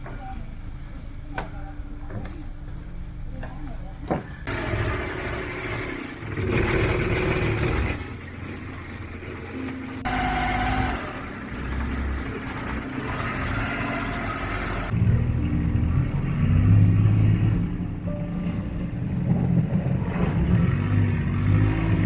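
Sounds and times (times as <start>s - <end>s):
motor engine running: 4.4s - 15.8s.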